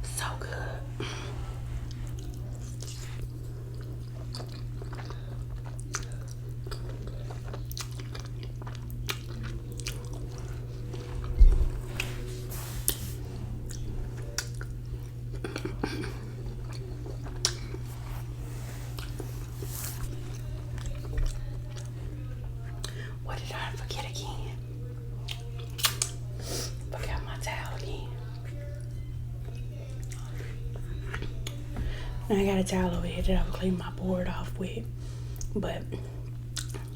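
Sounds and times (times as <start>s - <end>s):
steady low hum: 0.0s - 36.9s
close chewing of noodles: 1.0s - 23.1s, 36.2s - 36.9s.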